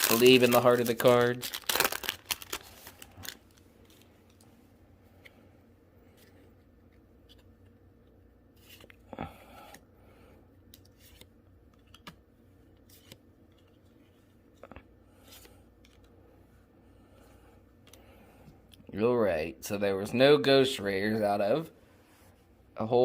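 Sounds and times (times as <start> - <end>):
foil pack crinkling: 0.0 - 4.1
cards clicking and rustling: 0.0 - 4.5, 10.6 - 16.2.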